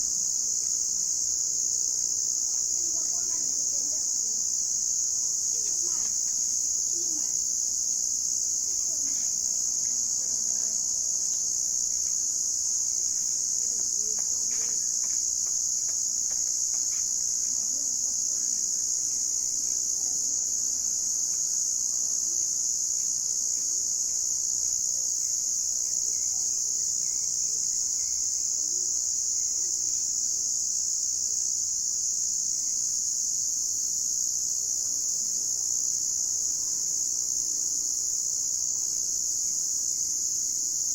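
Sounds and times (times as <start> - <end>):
crickets chirping: 0.0 - 40.9.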